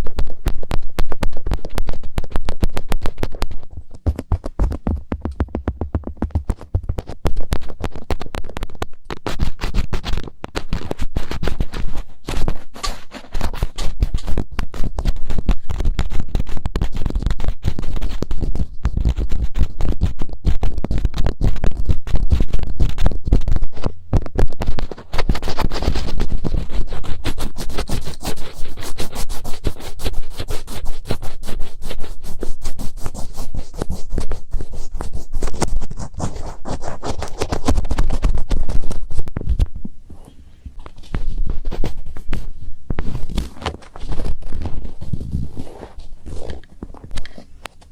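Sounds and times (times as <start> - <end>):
fingertips scratching microphone: 0.0 - 47.9.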